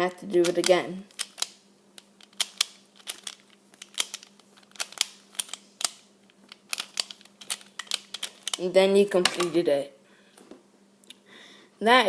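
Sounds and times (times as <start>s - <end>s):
faint steady hum: 0.0s - 12.0s
plastic puzzle clicking: 0.4s - 9.6s.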